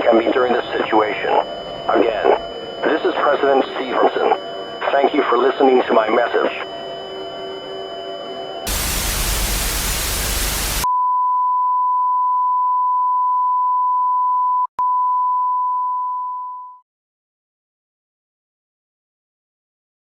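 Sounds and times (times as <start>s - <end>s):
steady test tone: 6.6s - 10.9s
loud static hiss: 8.7s - 10.9s.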